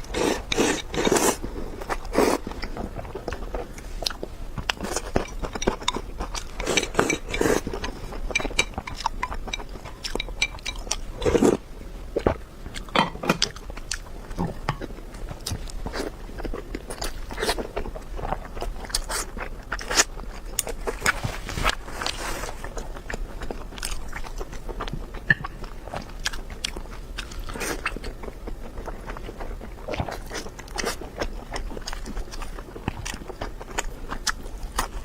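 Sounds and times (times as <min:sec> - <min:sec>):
person chewing and crunching: 0:00.0 - 0:11.6, 0:12.2 - 0:35.0.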